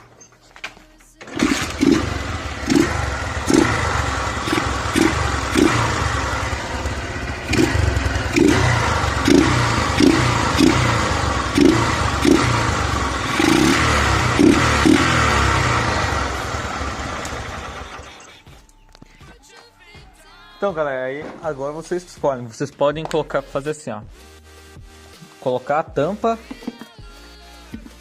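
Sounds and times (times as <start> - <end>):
motorcycle engine revving: 1.2 - 18.3.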